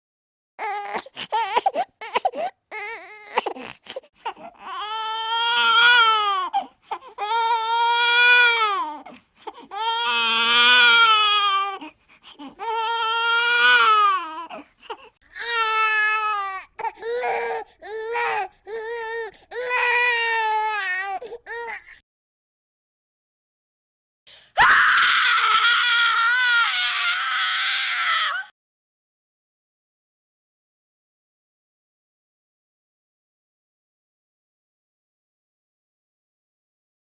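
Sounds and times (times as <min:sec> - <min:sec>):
infant crying: 0:00.6 - 0:22.0, 0:24.6 - 0:28.5.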